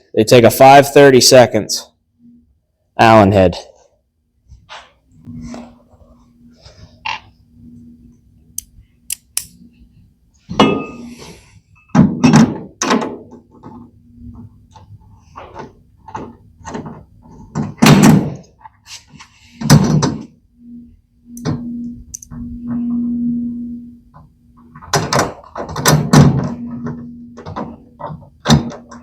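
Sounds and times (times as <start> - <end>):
faint steady hum: 0.0 - 29.0
metal cabinet clunks and knocks: 11.9 - 13.4, 16.2 - 18.4, 24.9 - 26.6.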